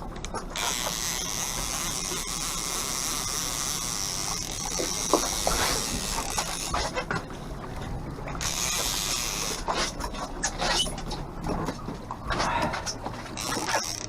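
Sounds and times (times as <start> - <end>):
fishing reel whirring: 0.3 - 7.0, 8.4 - 9.8, 13.4 - 14.0.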